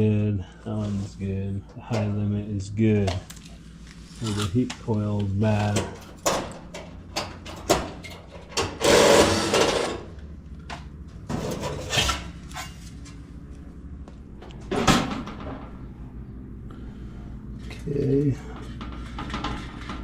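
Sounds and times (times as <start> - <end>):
scraping rustle of dryer parts: 0.5 - 1.4, 3.0 - 10.1, 11.2 - 13.3, 17.6 - 20.0
clicks and knocks of parts: 3.0 - 13.2.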